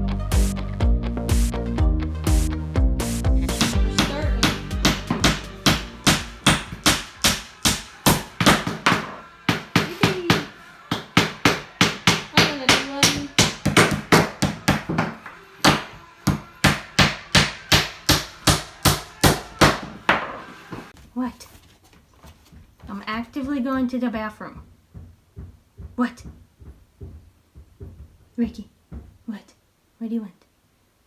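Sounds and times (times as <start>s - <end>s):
mallet tapping floor planks: 3.6s - 18.7s, 24.5s - 29.2s.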